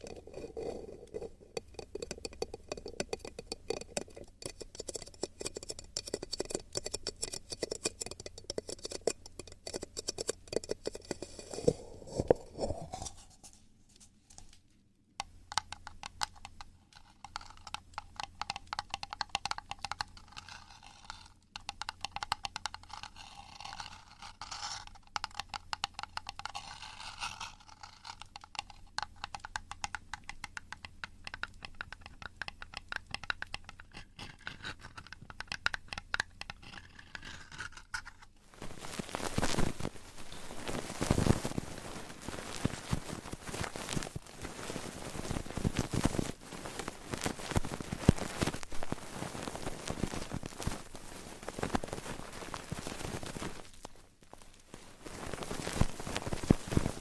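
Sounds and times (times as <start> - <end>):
scratching and crackling at microphone: 0.0 - 57.0.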